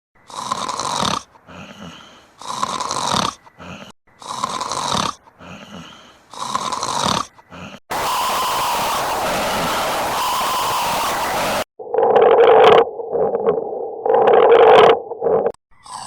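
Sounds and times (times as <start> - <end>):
baby snoring: 0.3 - 7.8
steady hiss with held tone: 7.9 - 11.6.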